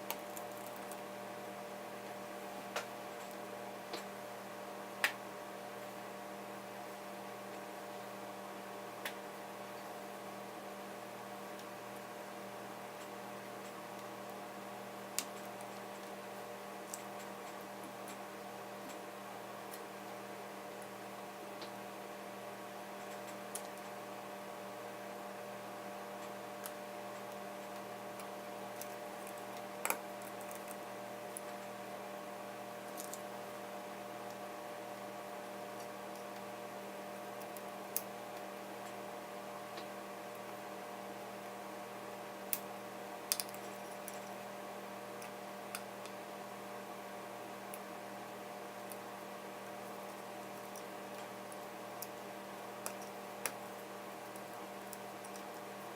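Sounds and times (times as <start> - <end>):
electrical hum: 0.0 - 55.9.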